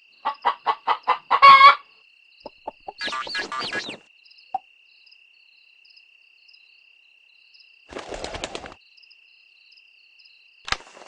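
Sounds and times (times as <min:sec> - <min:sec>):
crickets chirping: 0:00.0 - 0:11.0
chicken flapping wings: 0:07.9 - 0:08.8, 0:10.7 - 0:11.0.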